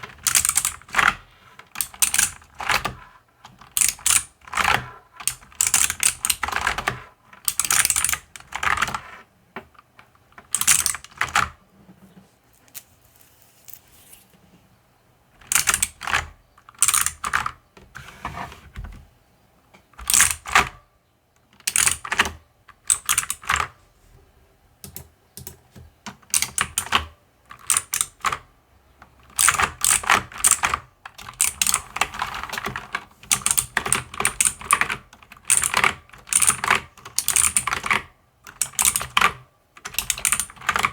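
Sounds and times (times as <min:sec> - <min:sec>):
mechanical keyboard typing: 0:00.0 - 0:09.3, 0:10.0 - 0:11.6, 0:15.4 - 0:17.6, 0:20.0 - 0:20.8, 0:21.6 - 0:23.8, 0:24.8 - 0:40.9.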